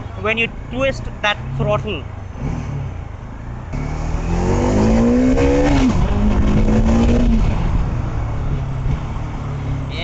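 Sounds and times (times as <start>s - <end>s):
motorcycle engine accelerating: 3.7s - 9.3s.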